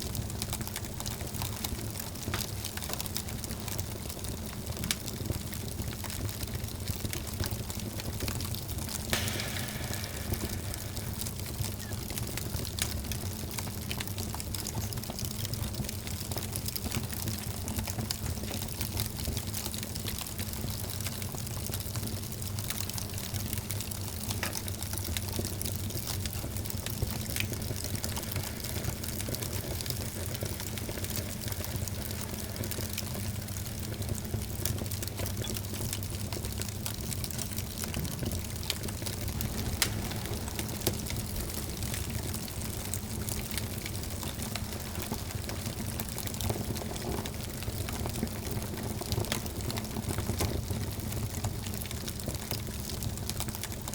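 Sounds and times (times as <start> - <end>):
wood fire hissing and crackling: 0.0 - 53.9
sharp fire pops: 7.0 - 15.0, 22.3 - 35.8, 36.6 - 48.6.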